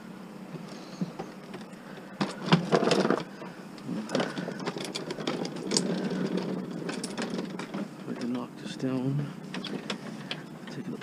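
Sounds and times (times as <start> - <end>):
metal scrap clattering: 4.1 - 8.3.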